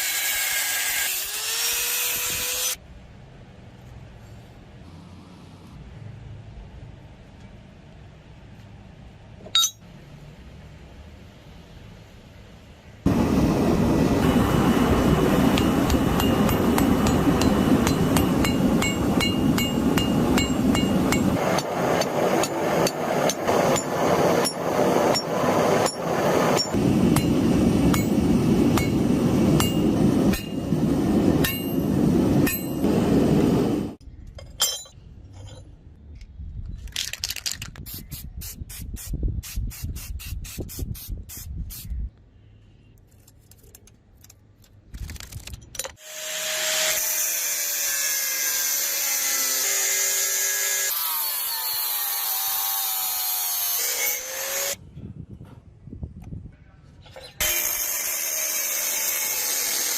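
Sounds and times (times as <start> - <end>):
steady rushing noise: 13.0 - 34.0
hammer blows on steel: 15.3 - 30.7.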